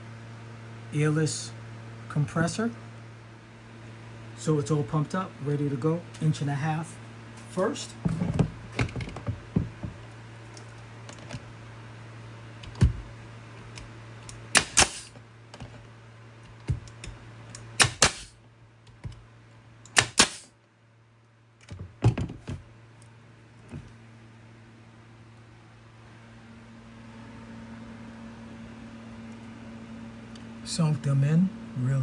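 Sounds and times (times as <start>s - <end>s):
nail gun firing: 14.4s - 15.1s, 17.8s - 18.4s, 19.9s - 20.5s.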